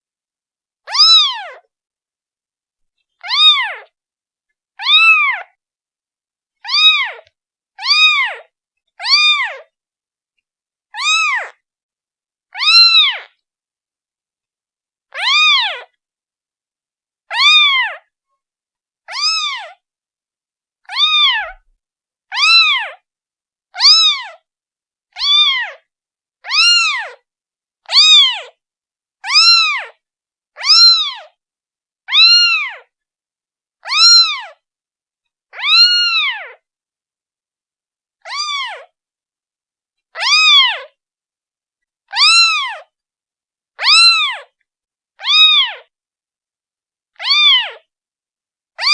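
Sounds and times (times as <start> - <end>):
kitten meowing: 0.9 - 1.6, 3.2 - 3.9, 4.8 - 5.6, 6.6 - 9.7, 11.0 - 11.6, 12.6 - 13.3, 15.1 - 16.0, 17.3 - 18.1, 19.1 - 19.8, 20.8 - 21.7, 22.3 - 23.0, 23.8 - 24.4, 25.1 - 25.8, 26.4 - 27.2, 27.8 - 28.5, 29.2 - 30.0, 30.6 - 31.4, 32.1 - 32.9, 33.8 - 34.6, 35.5 - 36.6, 38.3 - 38.9, 40.2 - 40.9, 42.1 - 42.9, 43.8 - 44.5, 45.2 - 45.9, 47.2 - 47.9.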